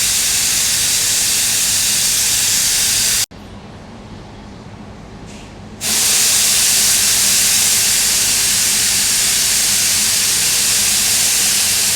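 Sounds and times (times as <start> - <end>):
espresso machine hissing: 0.0 - 3.3, 5.8 - 11.9.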